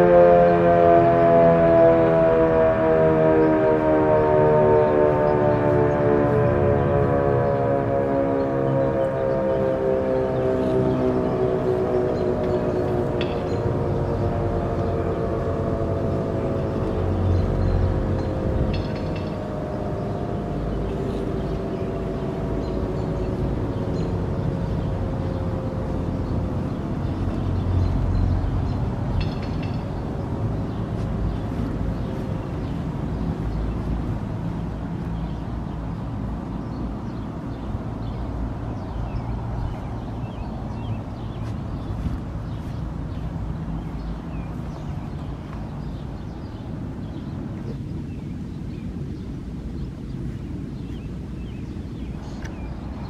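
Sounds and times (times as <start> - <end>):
two-tone warning siren: 0.0 - 46.8
low engine hum: 0.0 - 53.0
small birds chirping: 16.6 - 53.0.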